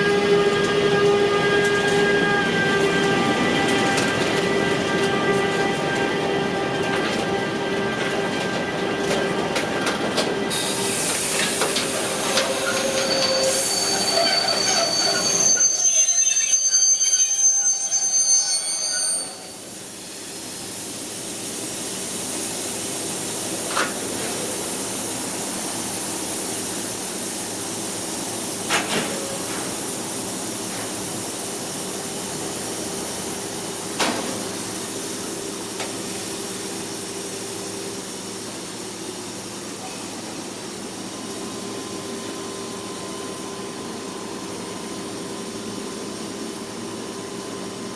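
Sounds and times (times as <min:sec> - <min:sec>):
standing train humming: 0:00.0 - 0:16.6, 0:19.3 - 0:47.9
train brakes squealing: 0:10.4 - 0:20.5.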